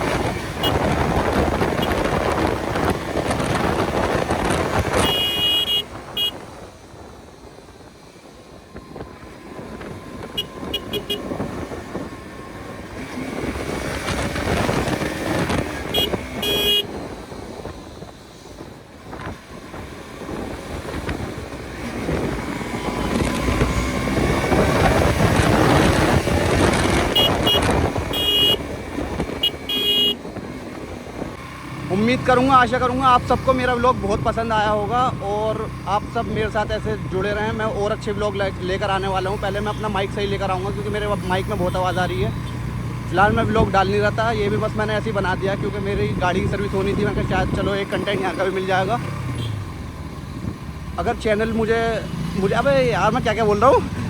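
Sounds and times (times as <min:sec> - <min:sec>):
wind noise on microphone: 0:00.0 - 0:38.2, 0:41.0 - 0:48.4, 0:49.0 - 0:51.1
motorcycle being ridden: 0:00.0 - 0:54.0
traffic noise: 0:00.0 - 0:54.0
short horn toots: 0:04.9 - 0:06.4, 0:15.8 - 0:16.9, 0:27.1 - 0:28.6, 0:29.4 - 0:30.2.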